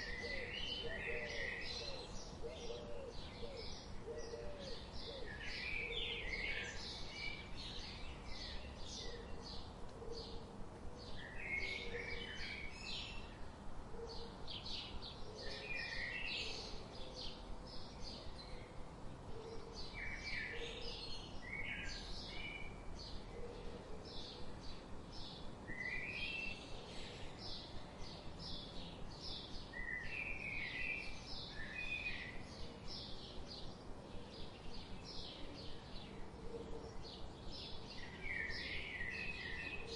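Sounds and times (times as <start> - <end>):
faint low hiss: 0.0 - 39.9
birds chirping and trilling: 19.4 - 39.9.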